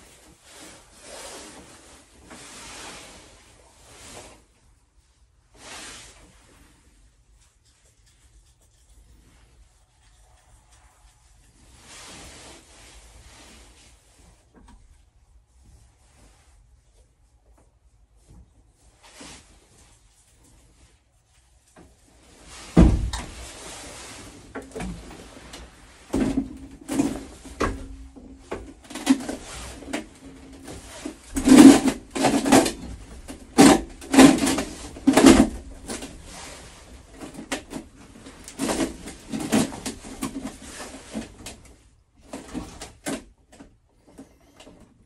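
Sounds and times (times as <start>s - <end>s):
pipe fittings knocking and clattering: 26.1s - 36.1s.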